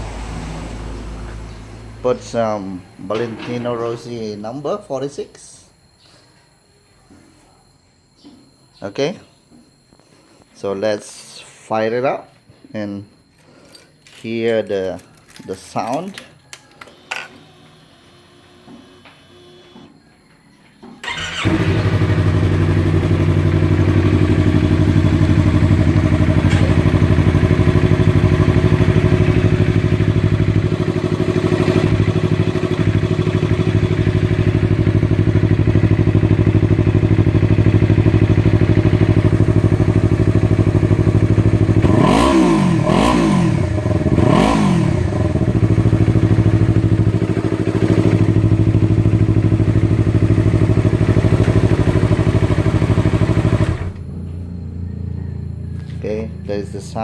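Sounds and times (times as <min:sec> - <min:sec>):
motorcycle engine idling and revving: 0:00.0 - 0:03.6, 0:21.0 - 0:57.0.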